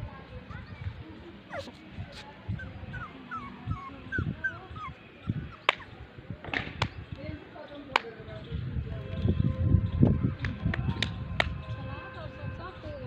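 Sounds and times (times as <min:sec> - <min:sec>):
dog whimpering: 0:01.5 - 0:01.8, 0:02.5 - 0:05.9.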